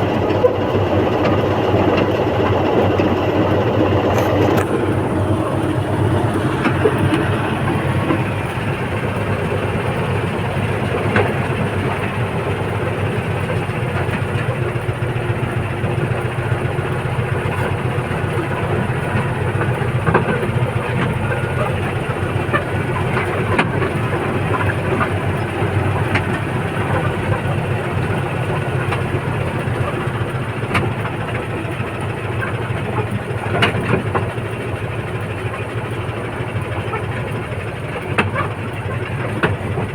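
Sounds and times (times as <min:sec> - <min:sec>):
large engine rumbling: 0:00.0 - 0:39.9
sharp clicks and knocks: 0:00.1 - 0:39.9.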